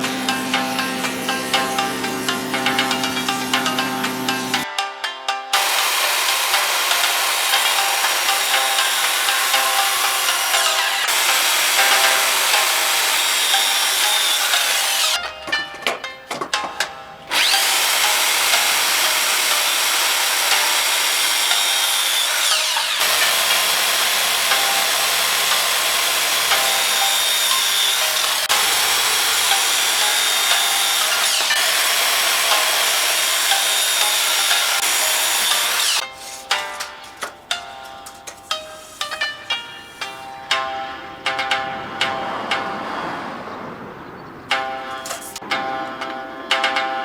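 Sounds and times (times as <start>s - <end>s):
power tool cutting wood: 0.0s - 4.6s, 5.6s - 16.5s, 17.3s - 36.9s, 44.5s - 45.4s.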